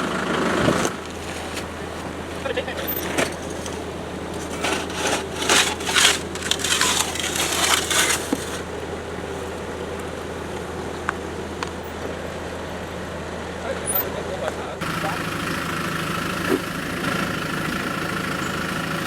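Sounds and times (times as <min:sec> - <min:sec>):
vehicle engine humming: 0:00.0 - 0:19.0
crunching and crackling: 0:00.6 - 0:08.8.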